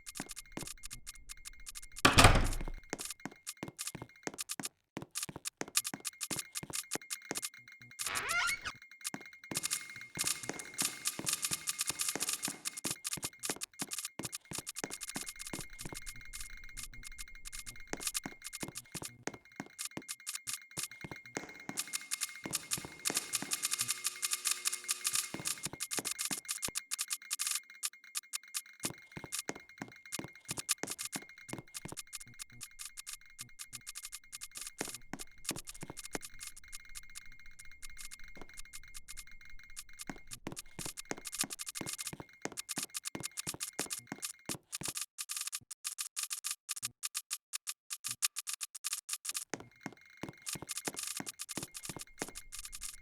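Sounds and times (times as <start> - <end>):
rapid irregular clicking: 28.4 - 53.0.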